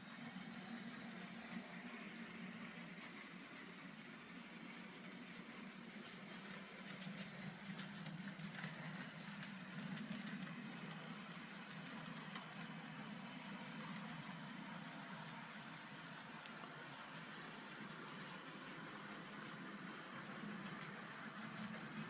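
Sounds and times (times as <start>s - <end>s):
model train motor hum: 0.0s - 22.0s
wheels clicking on rails: 0.0s - 22.0s.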